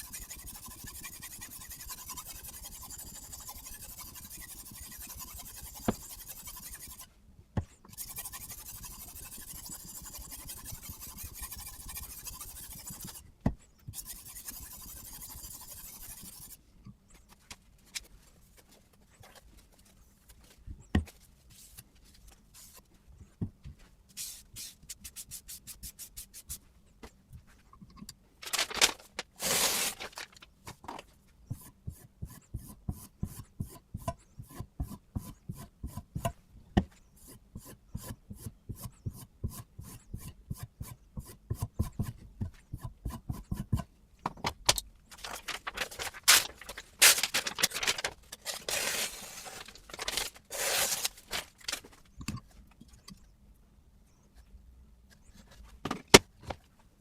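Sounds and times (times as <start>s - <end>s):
sharpening stone scraping knife: 0.0s - 7.1s, 7.9s - 13.2s, 14.0s - 16.6s.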